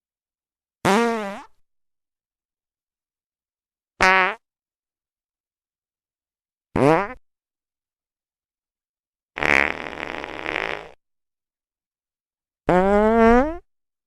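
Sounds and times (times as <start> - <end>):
rough airy fart: 0.8 - 1.6, 6.8 - 7.2, 9.4 - 11.0, 12.7 - 13.7
pitched rising fart: 9.4 - 11.0, 12.7 - 13.7.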